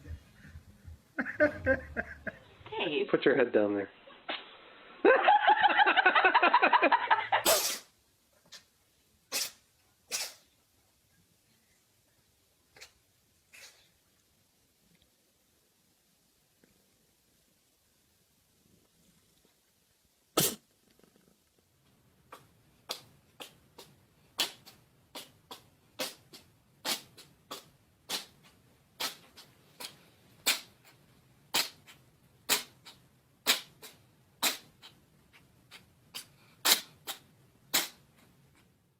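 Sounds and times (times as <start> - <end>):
short sharp snaps: 22.3 - 28.4, 29.0 - 30.8, 31.5 - 35.0, 36.2 - 38.3.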